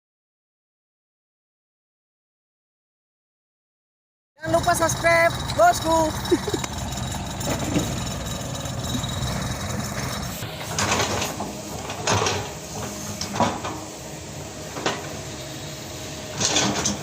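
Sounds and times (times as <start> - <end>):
machine engine humming: 4.4 - 17.0.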